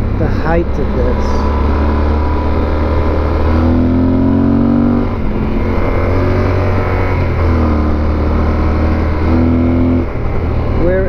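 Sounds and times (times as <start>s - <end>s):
motorcycle engine under throttle: 0.0s - 11.0s.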